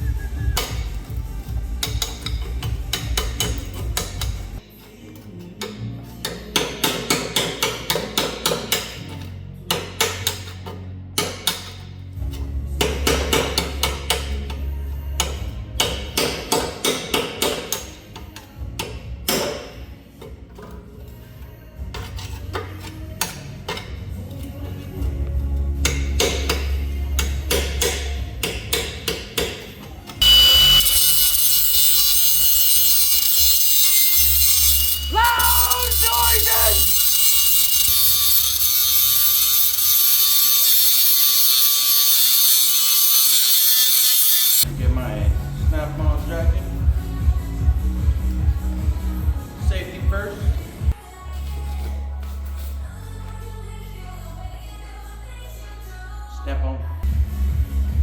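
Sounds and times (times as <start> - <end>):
background music: 0.0 - 58.0
power tool scouring metal: 30.2 - 44.7.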